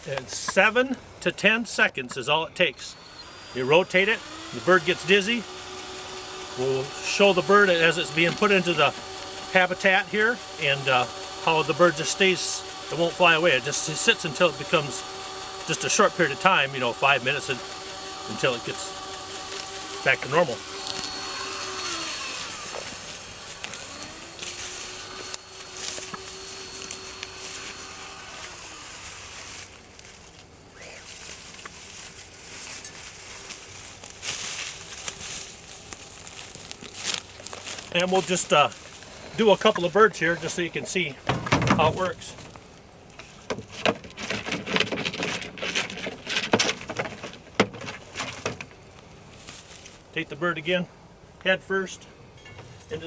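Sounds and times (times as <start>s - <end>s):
steady hum: 0.0s - 43.4s
rustling in grass: 17.6s - 41.3s, 49.0s - 50.1s
bird scuffling and rustling: 29.0s - 40.6s.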